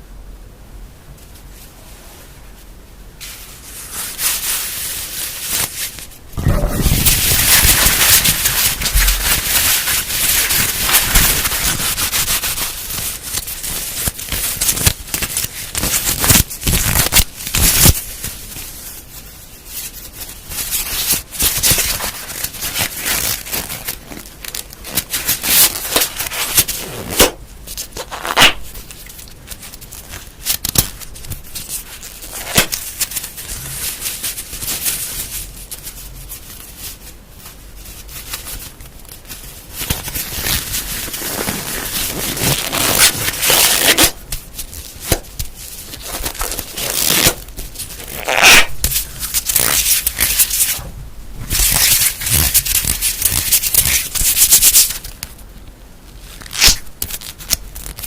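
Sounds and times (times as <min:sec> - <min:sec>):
soft rustling: 0:01.1 - 0:15.8
crackling and rubbing objects: 0:01.1 - 0:58.0.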